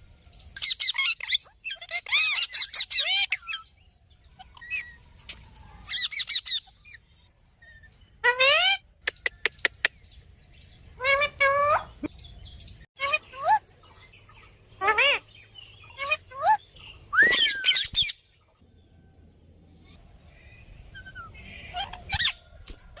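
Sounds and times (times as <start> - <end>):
parrot chirping and squawking: 0.6 - 5.0, 5.8 - 10.0, 11.0 - 12.0, 13.0 - 13.6, 14.3 - 15.2, 15.8 - 16.6, 17.3 - 18.3, 21.0 - 22.4
parrot swooping whistle: 17.2 - 18.0.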